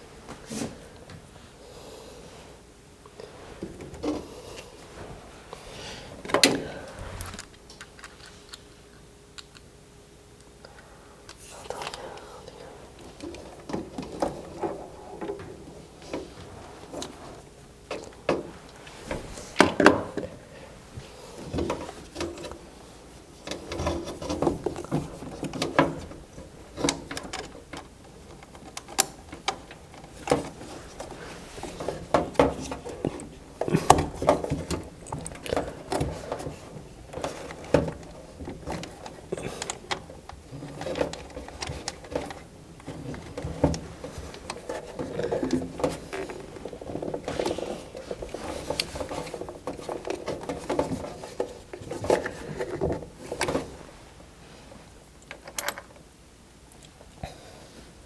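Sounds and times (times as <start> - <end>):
tools clicking on metal parts: 26.8 - 31.1.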